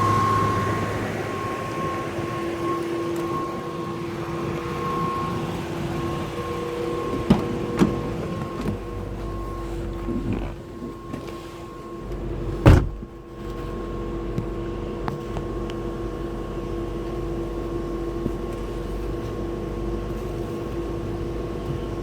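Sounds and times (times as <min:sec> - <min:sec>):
fan humming: 0:00.0 - 0:22.0
loud thump: 0:12.6 - 0:13.1.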